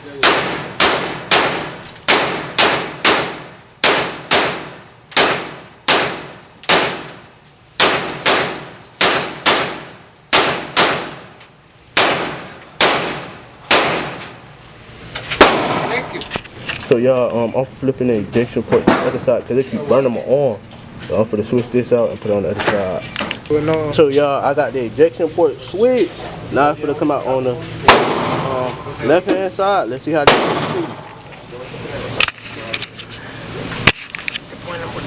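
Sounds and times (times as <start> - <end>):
pistol gunshots ringing: 0.2 - 7.2, 7.8 - 14.3, 15.4 - 16.1, 27.8 - 28.6, 30.2 - 31.1.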